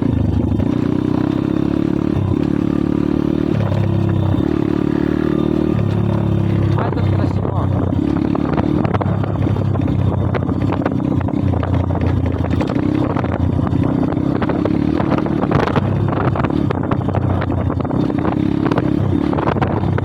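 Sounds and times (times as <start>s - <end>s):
small motorbike engine running: 0.0s - 20.0s
wind buffeting microphone: 5.8s - 20.0s.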